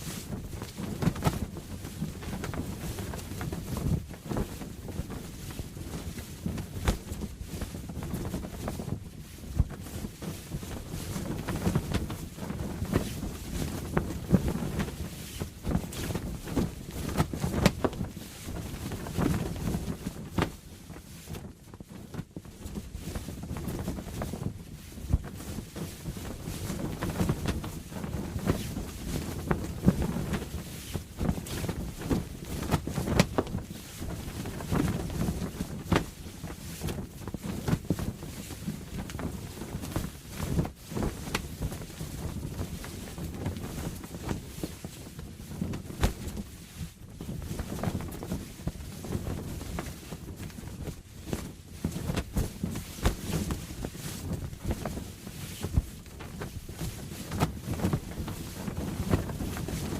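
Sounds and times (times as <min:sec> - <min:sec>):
canvas sail flapping and snapping: 0:00.0 - 0:59.9.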